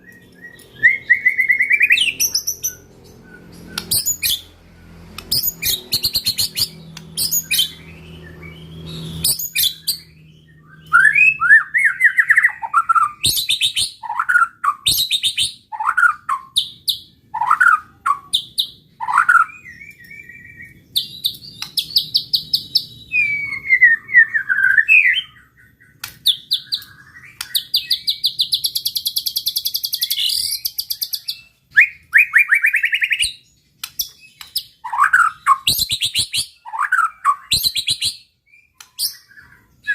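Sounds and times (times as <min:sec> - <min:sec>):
bird singing whistled song: 0:00.0 - 0:39.9.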